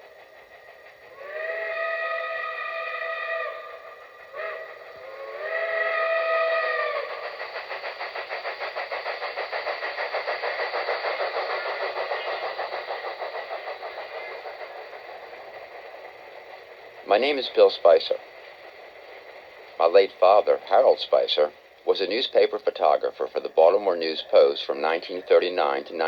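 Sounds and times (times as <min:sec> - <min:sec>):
locomotive rhythmic chuffing: 0:00.0 - 0:26.0
steam locomotive chime whistle: 0:01.0 - 0:07.4.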